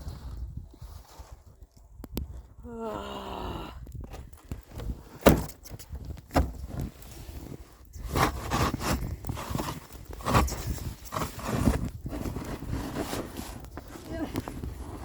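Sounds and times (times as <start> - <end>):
snow shovel scraping snow: 7.0 - 15.0.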